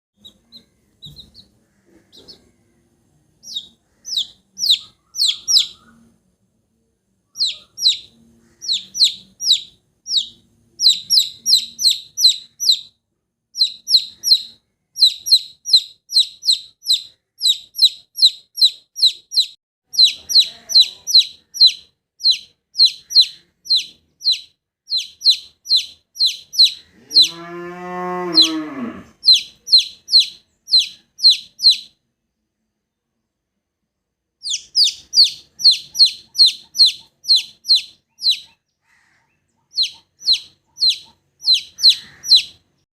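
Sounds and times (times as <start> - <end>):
chicks peeping: 0.2 - 2.6, 3.4 - 6.0, 7.4 - 12.9, 13.6 - 27.4, 28.3 - 28.6, 29.2 - 31.9, 34.4 - 38.6, 39.5 - 42.6
cow mooing: 26.9 - 29.2.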